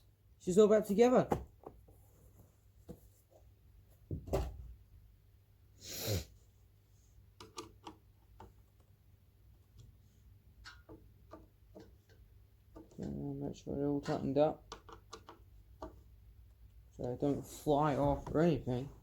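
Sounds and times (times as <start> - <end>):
short breathy burst: 5.8 - 6.4.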